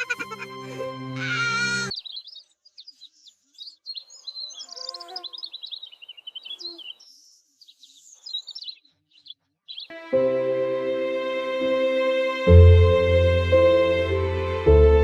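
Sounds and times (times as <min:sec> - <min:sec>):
birds chirping and twittering: 0:00.0 - 0:10.0.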